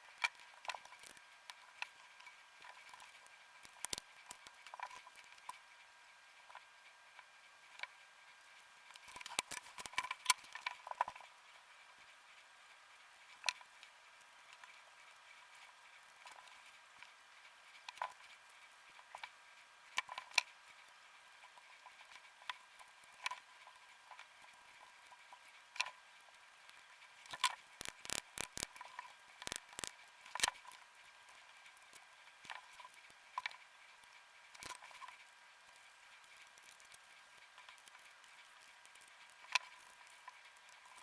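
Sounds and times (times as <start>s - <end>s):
faint steady whine: 0.0s - 41.0s
small plastic clicks and taps: 27.3s - 30.6s.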